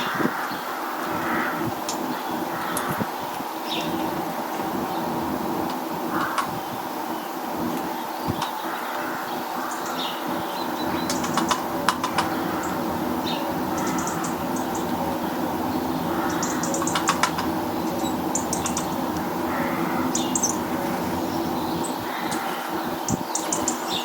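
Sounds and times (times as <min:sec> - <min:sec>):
steady low hum: 0:00.0 - 0:24.0
high bird chirps: 0:09.7 - 0:24.0.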